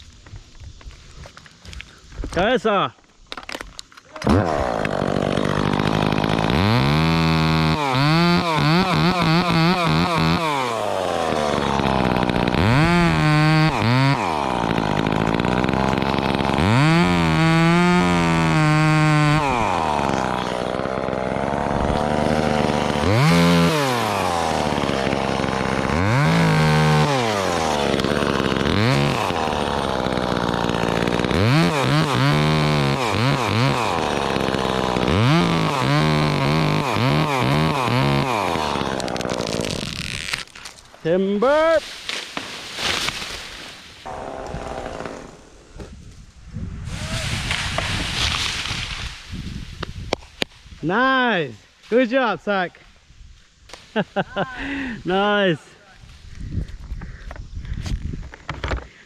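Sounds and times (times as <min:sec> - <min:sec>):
chainsaw cutting and revving: 0:04.2 - 0:40.8, 0:42.0 - 0:45.9, 0:46.9 - 0:50.2, 0:54.6 - 0:55.4.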